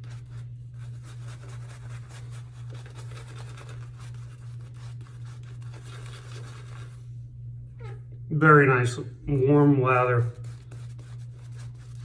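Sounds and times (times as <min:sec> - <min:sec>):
shaving brush scrubbing lather: 0:00.0 - 0:07.0, 0:10.0 - 0:12.0
low hum: 0:04.1 - 0:12.0.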